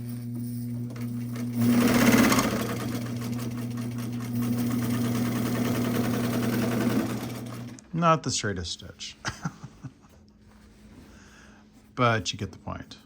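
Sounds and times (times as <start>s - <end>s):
sewing machine motor hum: 0.0s - 7.9s
sewing machine needle clatter: 0.8s - 7.8s.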